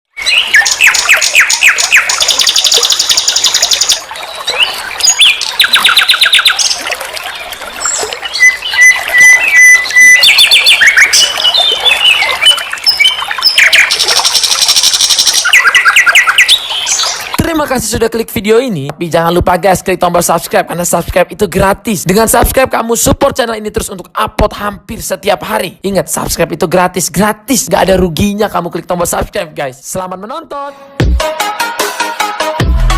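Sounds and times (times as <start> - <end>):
nightingale singing: 0.1 - 17.4.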